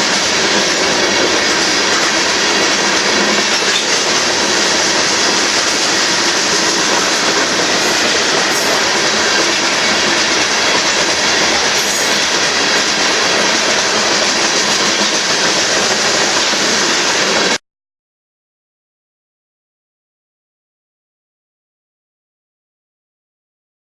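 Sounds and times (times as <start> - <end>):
freight train wheels rumbling: 0.0 - 17.6.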